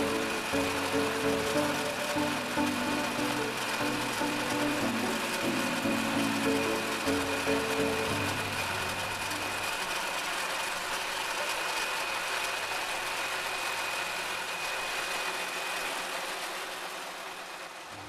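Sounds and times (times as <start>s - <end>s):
thin high whine: 0.0s - 10.3s
construction machinery running: 0.0s - 18.0s.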